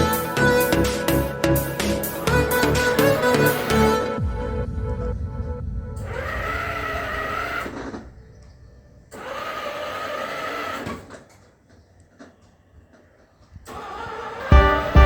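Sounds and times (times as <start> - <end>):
toy car electric motor whining: 9.2 - 11.3, 13.7 - 14.6.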